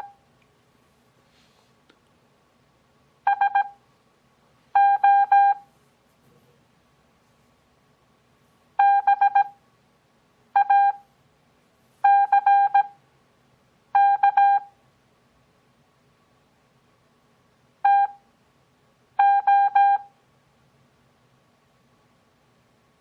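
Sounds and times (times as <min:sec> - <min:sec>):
morse code beeps: 0:03.3 - 0:03.8, 0:04.8 - 0:05.7, 0:08.8 - 0:09.6, 0:10.6 - 0:11.0, 0:12.0 - 0:13.0, 0:14.0 - 0:14.7, 0:17.8 - 0:18.2, 0:19.2 - 0:20.1.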